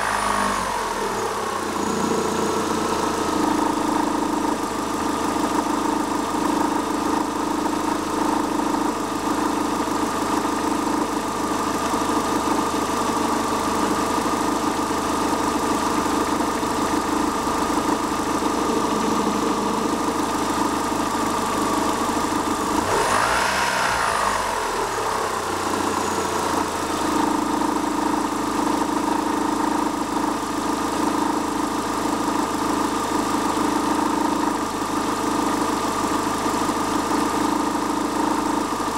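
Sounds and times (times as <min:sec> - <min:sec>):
car engine revving: 0:00.0 - 0:04.3, 0:17.4 - 0:27.6
car engine idling with rattling: 0:00.0 - 0:38.9.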